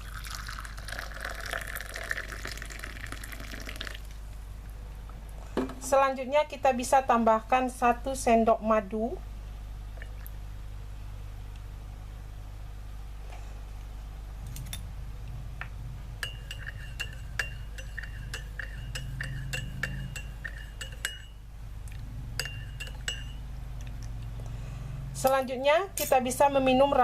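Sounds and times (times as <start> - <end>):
steady low hum: 0.0 - 27.0
spoon clinking against glass: 16.2 - 21.4, 22.4 - 23.4.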